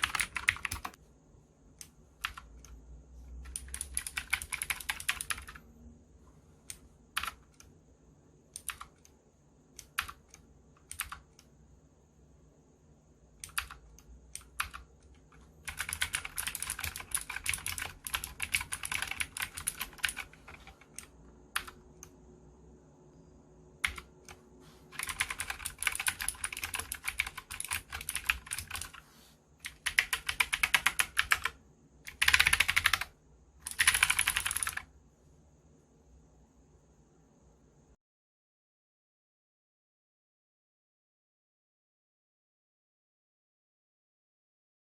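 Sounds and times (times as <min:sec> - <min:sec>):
clicky mechanical keyboard typing: 0:00.0 - 0:01.0, 0:03.5 - 0:05.6, 0:06.7 - 0:07.7, 0:08.6 - 0:09.2, 0:09.8 - 0:11.5, 0:13.4 - 0:22.1, 0:23.8 - 0:29.0, 0:29.6 - 0:34.9.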